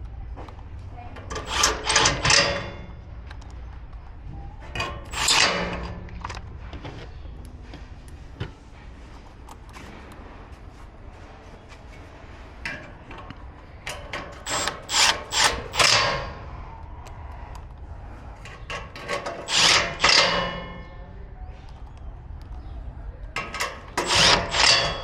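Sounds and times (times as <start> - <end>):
metal grill parts clattering: 1.2 - 3.0, 4.7 - 6.4, 12.6 - 16.4, 18.4 - 21.1, 23.4 - 25.0
metallic ring: 4.8 - 6.0, 19.3 - 21.1, 24.0 - 25.0.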